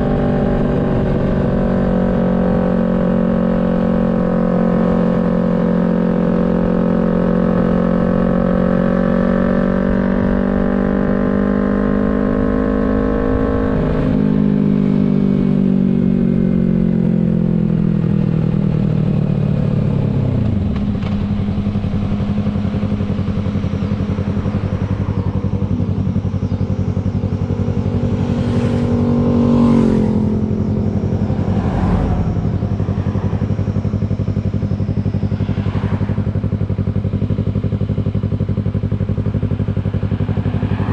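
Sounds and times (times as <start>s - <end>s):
motorcycle engine: 0.0s - 40.9s.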